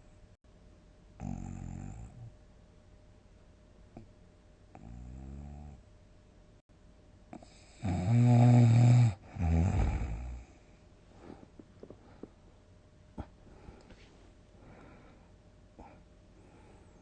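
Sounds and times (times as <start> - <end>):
person snoring loudly: 7.4 - 10.6.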